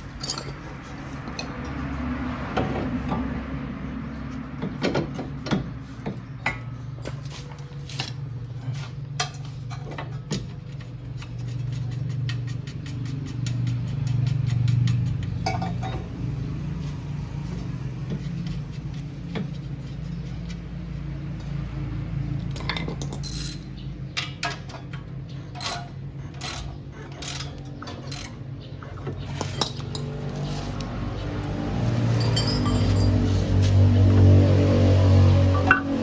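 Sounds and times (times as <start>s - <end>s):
metal tools clinking on steel: 0.0s - 1.7s, 22.5s - 26.6s, 27.2s - 30.8s, 31.7s - 34.2s.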